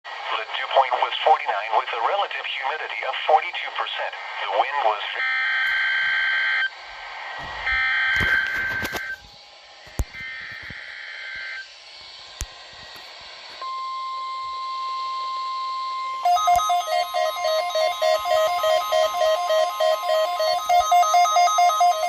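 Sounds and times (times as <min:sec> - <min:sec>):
steady warning alarm tone: 0:05.2 - 0:06.7, 0:07.6 - 0:09.2, 0:13.6 - 0:22.0
digital data tones: 0:16.1 - 0:22.0
rapidly repeating electronic beep: 0:16.2 - 0:22.0.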